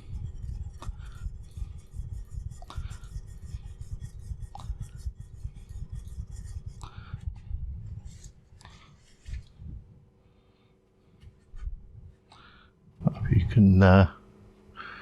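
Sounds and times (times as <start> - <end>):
chisel scraping on sharpening stone: 0.0 - 6.8.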